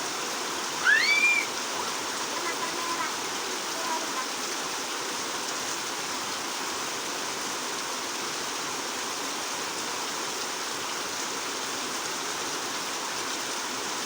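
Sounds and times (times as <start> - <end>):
heavy rain falling: 0.2 - 7.4.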